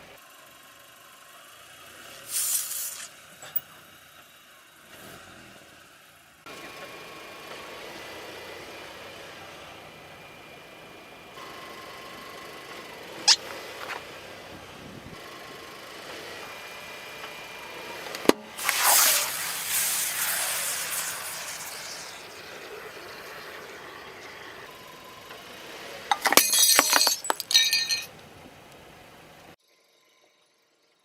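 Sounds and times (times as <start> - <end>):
loud hiss: 2.2 - 3.1, 18.5 - 23.8
sharp pop under tyre: 18.1 - 22.2.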